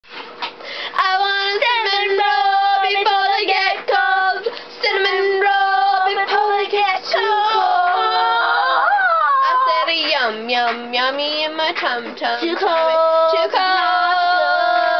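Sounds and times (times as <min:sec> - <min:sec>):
girl singing long notes: 0:04.0 - 0:10.0, 0:12.9 - 0:14.9.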